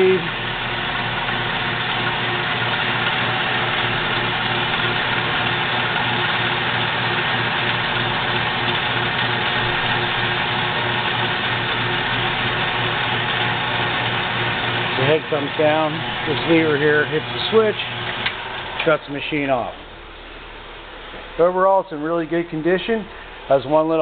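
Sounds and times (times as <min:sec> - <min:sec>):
band saw running: 0:00.0 - 0:20.4.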